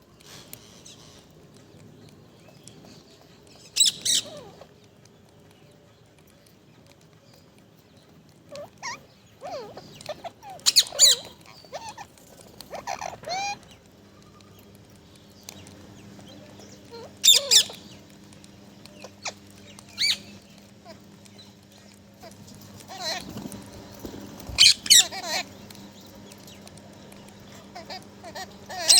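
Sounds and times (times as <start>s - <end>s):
faint steady hum: 0.0s - 28.9s
parrot squawking and chirping: 3.6s - 4.7s, 8.4s - 13.8s, 16.6s - 18.0s, 19.0s - 23.6s, 24.5s - 25.8s, 27.4s - 28.9s.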